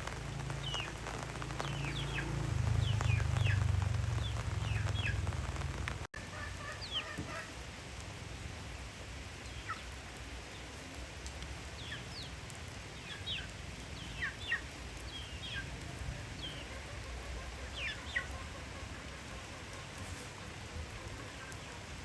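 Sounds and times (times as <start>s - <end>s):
rain hiss: 0.0s - 22.0s
chickens peeping: 6.3s - 7.4s, 16.4s - 20.3s.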